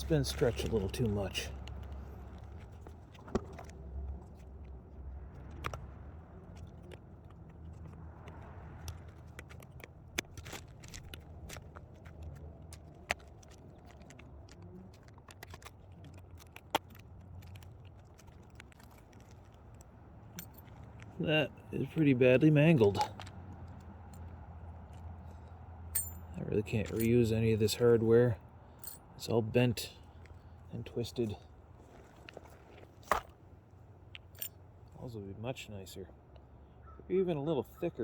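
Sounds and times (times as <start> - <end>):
metal hardware clicks and clinks: 20.3 - 21.2, 25.3 - 27.4, 28.8 - 29.3, 34.1 - 34.6.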